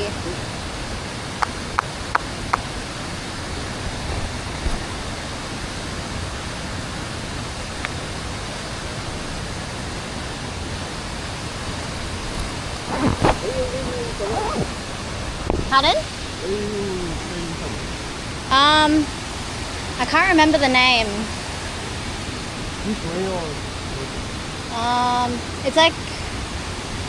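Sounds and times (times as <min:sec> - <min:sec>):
waterfall rushing into pool: 0:00.0 - 0:27.0
brief voice: 0:12.9 - 0:14.7.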